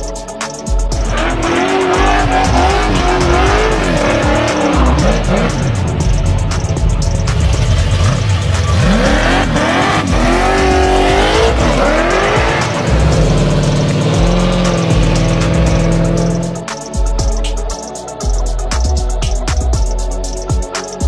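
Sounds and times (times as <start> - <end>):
music with heavy bass beat: 0.0 - 21.0
car engine revving: 1.0 - 16.8.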